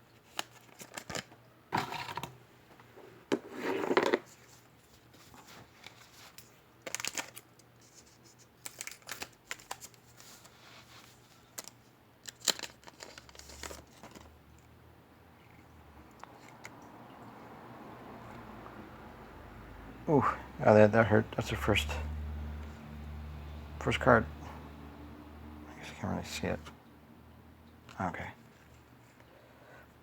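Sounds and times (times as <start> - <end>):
wrapper tearing and crinkling: 0.3 - 1.3, 6.8 - 7.6, 8.6 - 10.5, 11.1 - 14.3.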